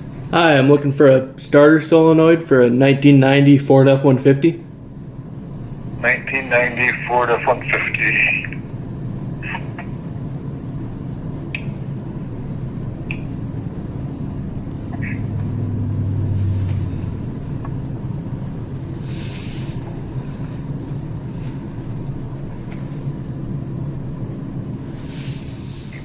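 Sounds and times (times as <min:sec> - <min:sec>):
vehicle engine droning: 0:12.8 - 0:23.2.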